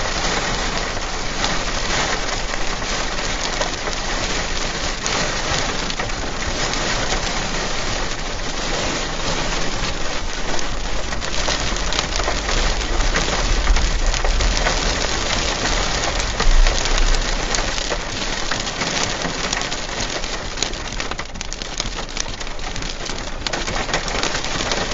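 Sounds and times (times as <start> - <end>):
crackling hiss: 0.0 - 24.9
wind gusts buffeting microphone: 10.4 - 19.6
low rumble: 10.4 - 20.1.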